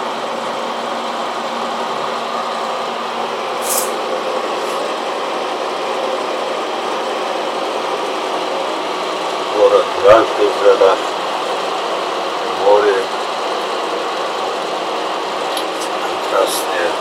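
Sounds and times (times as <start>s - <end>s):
steady mechanical drone: 0.0s - 17.0s
brief high hiss: 3.6s - 4.0s.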